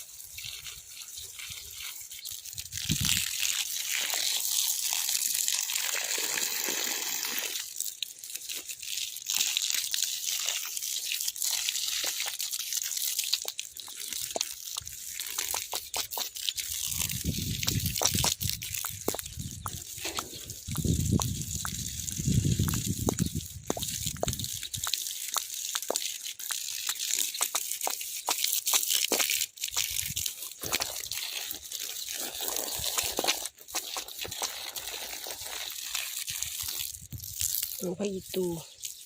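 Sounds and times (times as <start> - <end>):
water gushing and splashing: 0.0 - 39.0
leaves crackling: 15.2 - 35.8.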